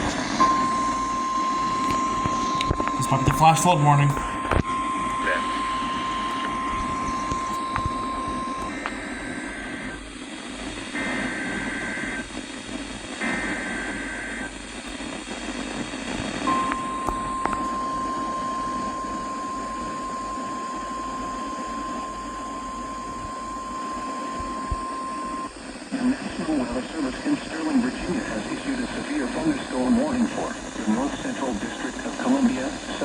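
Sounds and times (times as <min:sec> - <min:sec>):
alarm tone: 0:00.0 - 0:10.0, 0:16.3 - 0:25.6
radio hiss: 0:00.0 - 0:33.0.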